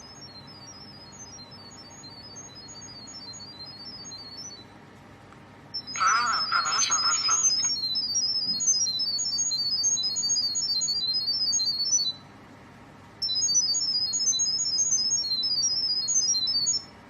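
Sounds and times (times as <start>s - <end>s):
electronic ringtone melody: 6.0s - 7.9s.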